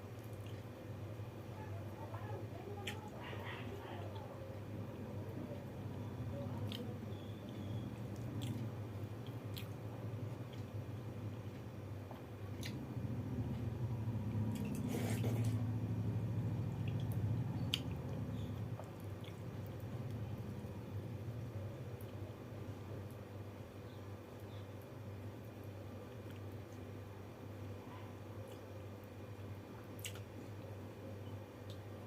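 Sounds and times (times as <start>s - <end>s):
steady low hum: 0.0s - 32.0s
wet squelches of eating rice: 0.0s - 32.0s.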